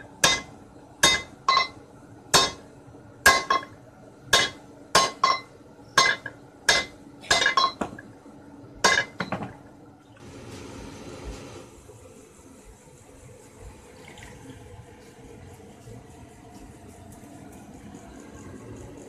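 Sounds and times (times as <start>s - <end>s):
sledgehammer striking steel bar: 0.2s - 1.7s, 2.4s - 2.6s.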